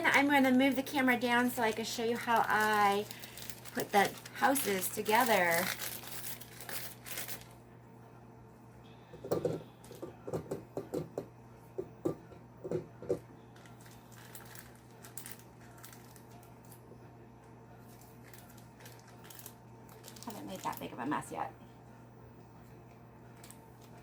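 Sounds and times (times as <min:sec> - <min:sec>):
low electrical hum: 0:00.0 - 0:24.0.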